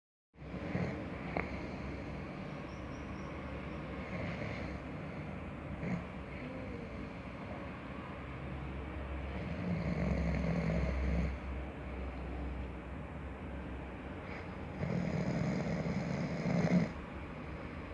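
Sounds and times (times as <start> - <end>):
person snoring: 4.0 - 7.6, 9.3 - 11.5, 14.3 - 17.0.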